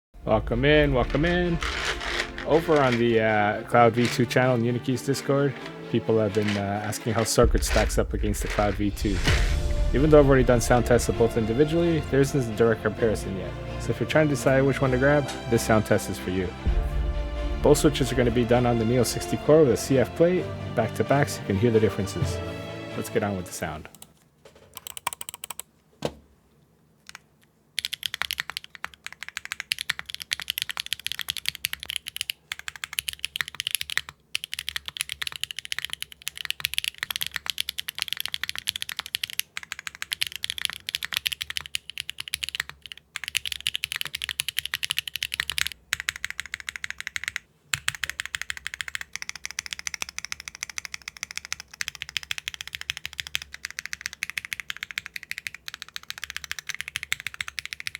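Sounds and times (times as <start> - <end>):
fast typing on mechanical keyboard: 1.1 - 8.7, 24.8 - 25.7, 27.1 - 57.9.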